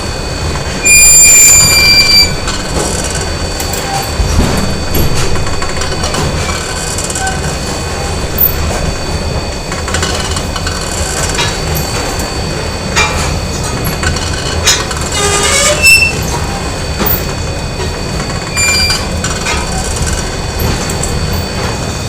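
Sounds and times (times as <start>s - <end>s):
constant machine whine: 0.0s - 22.0s
factory machinery rumble: 0.0s - 22.0s
metallic squeal: 0.7s - 11.8s, 14.5s - 17.3s, 18.0s - 20.4s.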